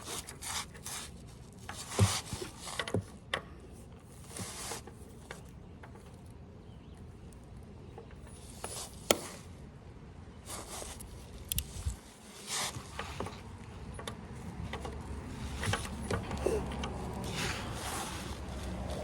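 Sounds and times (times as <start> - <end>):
scrapes and rustles: 0.0 - 6.4, 10.4 - 19.0.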